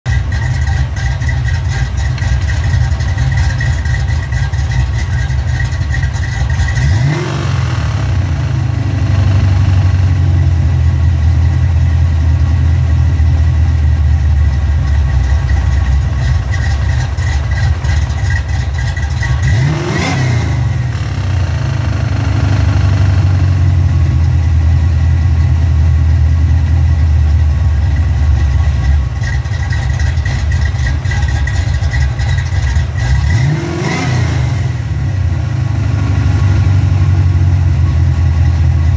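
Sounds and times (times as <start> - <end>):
car engine idling: 0.0 - 38.9
engine revving: 0.1 - 10.9, 15.3 - 24.4, 28.6 - 38.9
high whine from clutch: 0.1 - 11.7, 13.1 - 25.6, 26.3 - 35.4.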